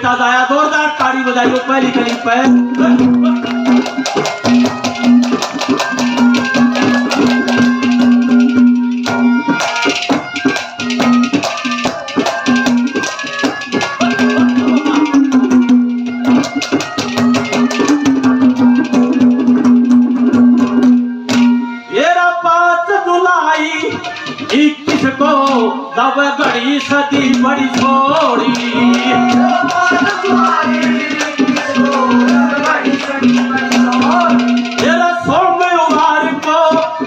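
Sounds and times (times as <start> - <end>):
rattling percussion: 1.0 - 21.8, 23.9 - 25.7, 26.4 - 37.0
person singing: 21.9 - 37.0
fast dense drumming: 27.2 - 36.0.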